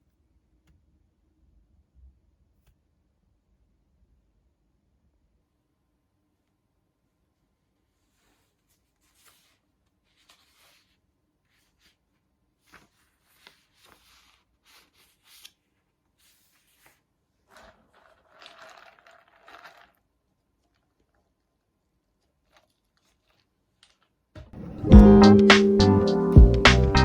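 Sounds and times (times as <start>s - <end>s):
handling rustles and scrapes: 7.8s - 24.6s.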